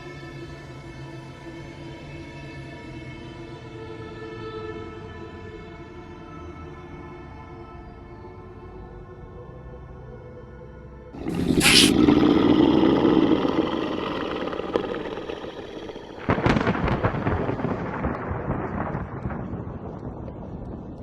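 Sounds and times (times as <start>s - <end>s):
thunder cracks and rumble: 15.3s - 21.0s.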